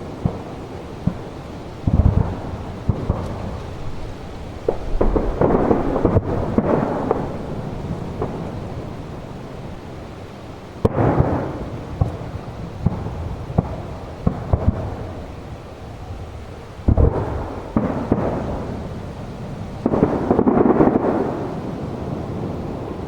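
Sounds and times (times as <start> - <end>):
rolling rumble: 0.0 - 23.0
firework shells bursting: 1.9 - 9.6.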